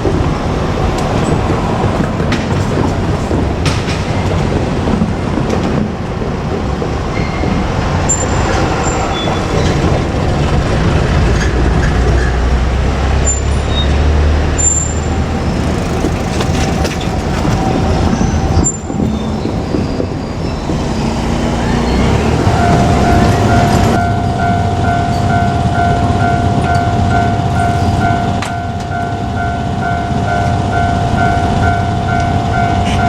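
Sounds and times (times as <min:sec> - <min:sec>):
diesel railcar running: 0:00.0 - 0:33.0
wheels on rails: 0:00.0 - 0:33.0
deep rumble: 0:09.3 - 0:33.0.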